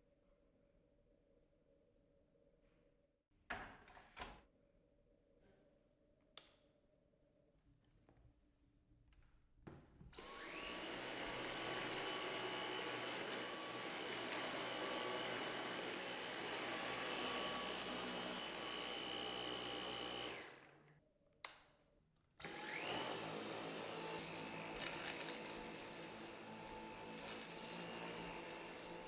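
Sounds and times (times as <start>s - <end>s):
vacuum cleaner motor whining: 10.2s - 20.9s, 22.4s - 29.0s.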